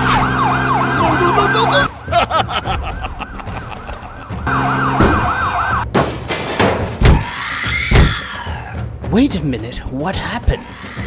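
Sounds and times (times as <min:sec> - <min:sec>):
police siren wailing: 0:00.0 - 0:05.9.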